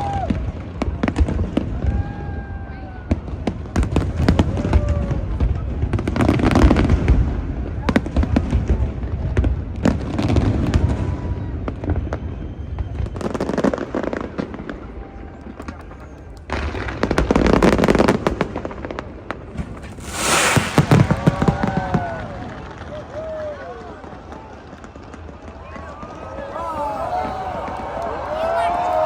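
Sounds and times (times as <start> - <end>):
fireworks bangs and booms: 0.0 - 29.0
fireworks crackling: 13.1 - 29.0.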